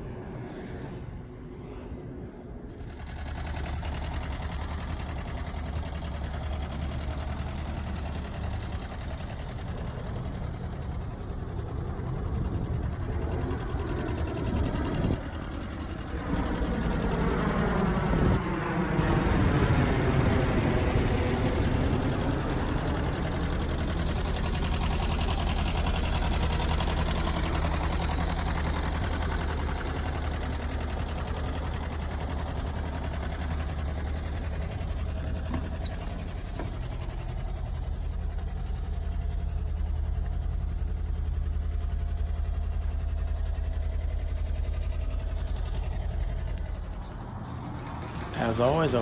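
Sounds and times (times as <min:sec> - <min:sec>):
air-cooled engine idling: 0:02.7 - 0:49.0.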